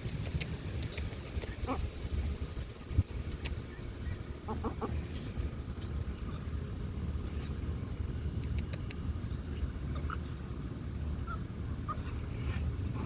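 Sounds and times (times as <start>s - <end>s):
steady low rumble: 0.0s - 13.0s
ducks calling softly: 0.1s - 2.0s, 3.2s - 5.4s.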